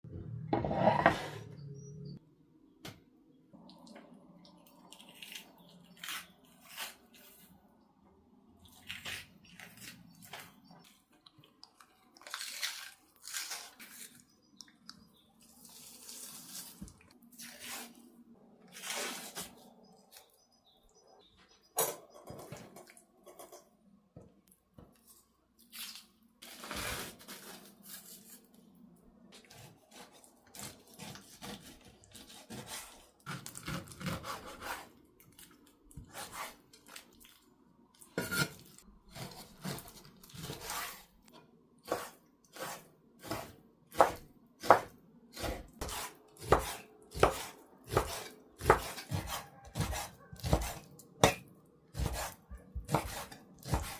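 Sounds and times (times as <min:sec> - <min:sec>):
knife scraping cutting board: 0:00.5 - 0:01.6, 0:29.5 - 0:34.9, 0:36.1 - 0:36.6, 0:38.2 - 0:41.0, 0:41.8 - 0:53.9
knife chopping on cutting board: 0:41.9 - 0:51.4, 0:52.0 - 0:53.9.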